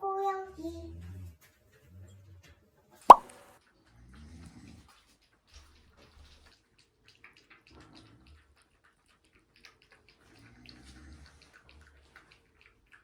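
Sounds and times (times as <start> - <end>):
cats eating: 3.6 - 13.0.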